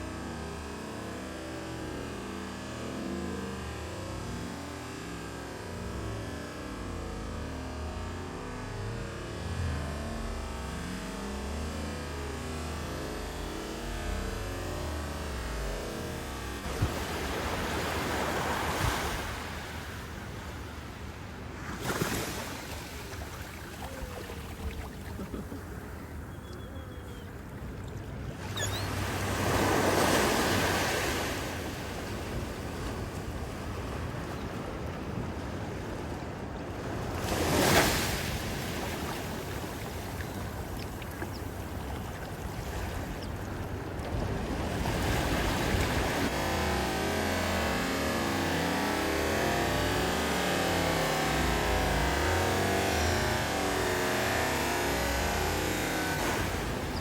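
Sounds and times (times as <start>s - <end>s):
steady wash of sea: 12.6s - 57.0s
wave breaking: 15.0s - 20.8s
ocean surf breaking: 16.7s - 26.1s, 28.3s - 40.8s.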